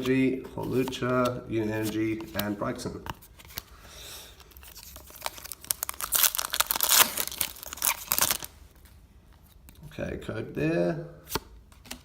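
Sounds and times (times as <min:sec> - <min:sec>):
foil wrapper tearing and crinkling: 0:04.5 - 0:08.6.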